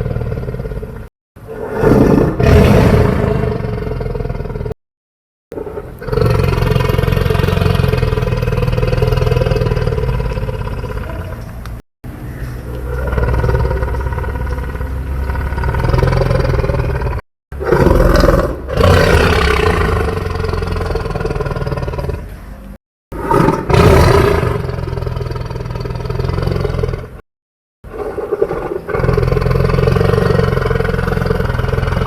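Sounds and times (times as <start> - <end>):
rasping dinosaur roars: 0.0 - 4.8, 12.8 - 22.3, 23.2 - 27.1, 27.9 - 32.0.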